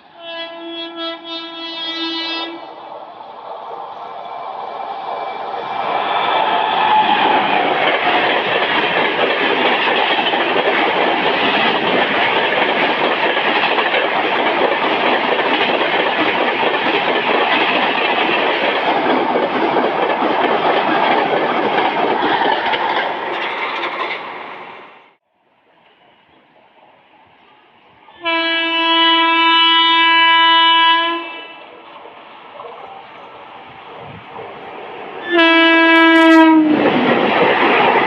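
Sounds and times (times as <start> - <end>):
train horn: 0.0 - 2.8, 28.1 - 31.8, 35.2 - 36.8
train wheels clattering on rails: 5.0 - 25.1, 36.5 - 38.0.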